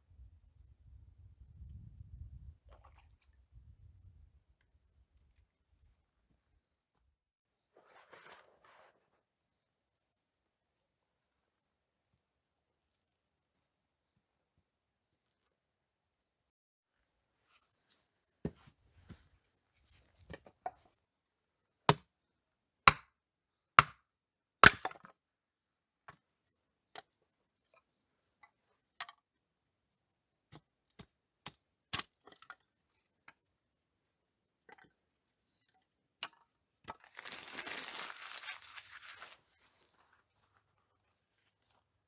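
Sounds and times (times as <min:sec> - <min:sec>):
sharp chopping knocks: 0:22.9 - 0:23.1
rustling: 0:37.0 - 0:41.8.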